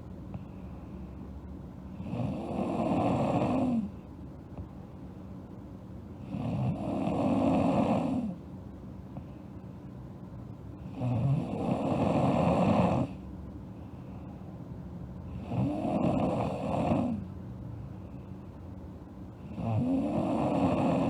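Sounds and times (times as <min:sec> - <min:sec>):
quiet breathing: 0:00.0 - 0:04.8, 0:09.0 - 0:10.0, 0:10.8 - 0:21.0
girl snoring: 0:02.0 - 0:03.9, 0:06.3 - 0:08.4, 0:10.9 - 0:13.2, 0:15.4 - 0:17.2, 0:19.5 - 0:21.0.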